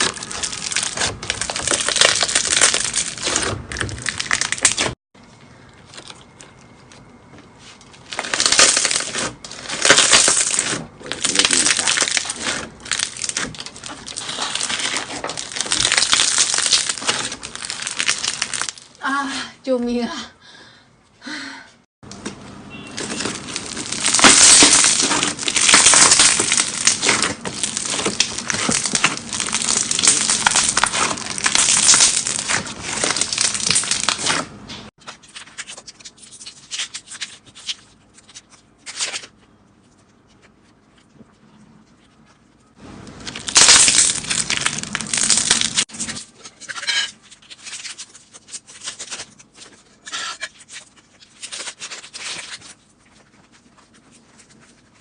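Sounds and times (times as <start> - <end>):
slime crackling: 0.0 - 5.0, 8.0 - 19.0, 23.0 - 34.7, 43.1 - 46.2, 47.2 - 55.0.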